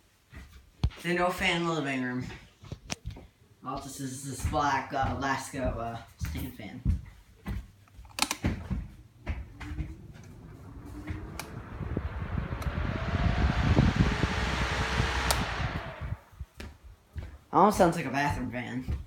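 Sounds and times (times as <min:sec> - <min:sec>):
fan motor hum: 0:08.2 - 0:16.7
fan air rush: 0:08.2 - 0:16.8.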